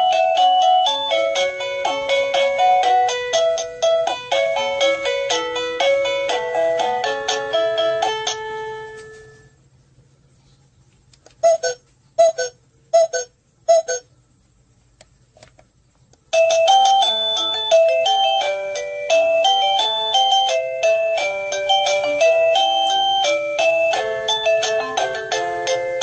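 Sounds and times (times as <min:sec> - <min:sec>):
doorbell electronic melody: 0:00.0 - 0:09.5, 0:16.3 - 0:26.0
short beeps: 0:11.4 - 0:14.1.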